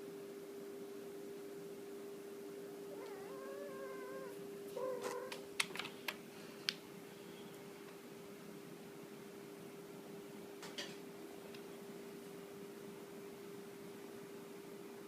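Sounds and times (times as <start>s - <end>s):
steady hum: 0.0s - 15.0s
cat meowing: 2.9s - 5.4s.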